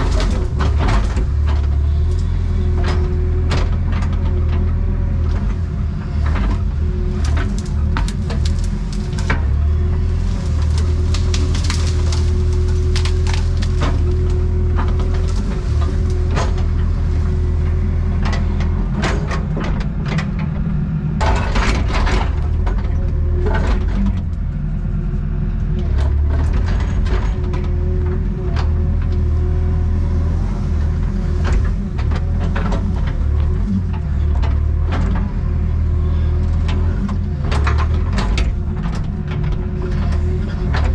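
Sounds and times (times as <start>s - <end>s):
branches and wood breaking: 0.0s - 3.9s, 5.5s - 18.6s
excavator engine running: 0.0s - 40.9s.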